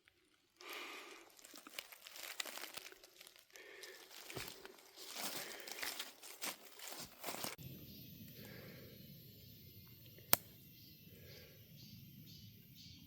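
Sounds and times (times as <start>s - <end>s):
crinkling and crunching rustle: 0.0s - 7.6s.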